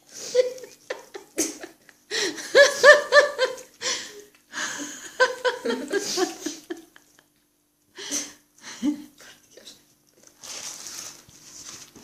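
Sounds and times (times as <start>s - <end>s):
person laughing: 0.1s - 7.3s.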